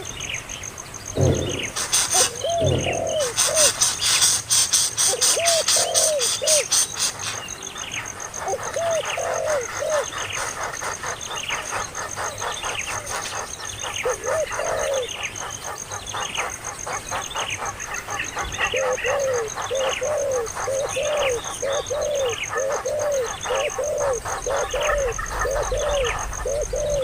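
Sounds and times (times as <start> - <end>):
high falling bird chirps: 0.1 - 4.3
low cooing bird calls: 1.2 - 27.0.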